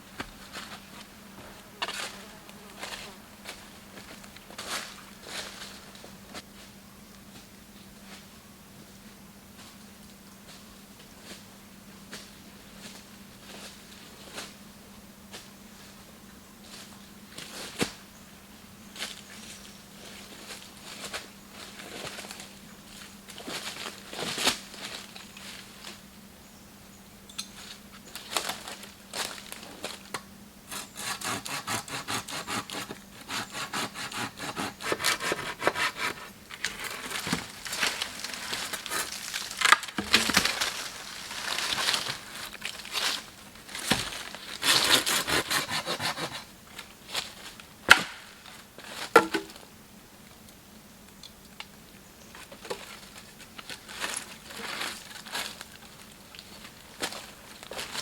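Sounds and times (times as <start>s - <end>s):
hand saw cutting wood: 30.7s - 40.4s, 43.9s - 46.5s
wood cracking: 34.8s - 46.4s.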